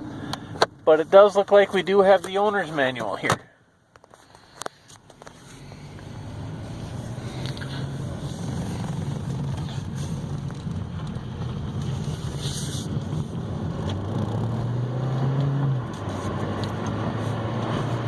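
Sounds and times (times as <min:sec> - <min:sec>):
engine and road drone: 0:00.0 - 0:18.0
wind noise in car cabin: 0:06.5 - 0:14.8.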